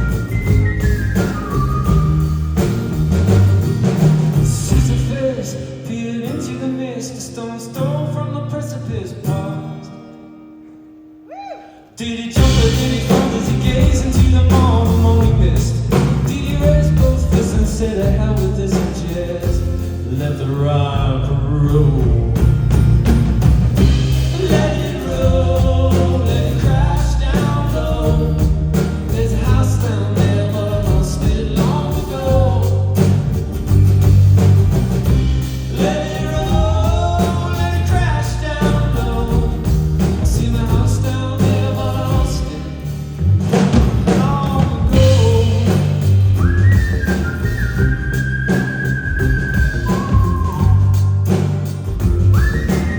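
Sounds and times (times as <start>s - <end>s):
rock band playing: 0.0s - 6.1s, 12.4s - 52.9s
person singing: 11.3s - 22.6s, 24.2s - 33.1s, 35.6s - 42.8s, 44.1s - 46.1s.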